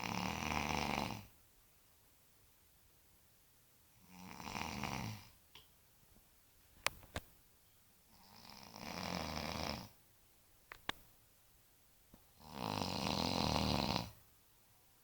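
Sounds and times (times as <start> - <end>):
person snoring: 0.0 - 1.3, 4.0 - 5.3, 8.2 - 10.0, 12.4 - 14.2
sharp clicks: 10.7 - 11.0.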